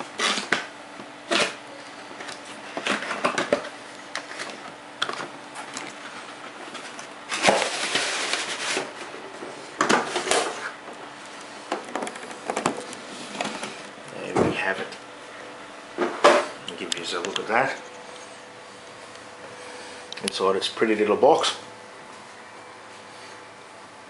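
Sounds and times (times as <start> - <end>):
cardboard scraping rustle: 5.5 - 10.8.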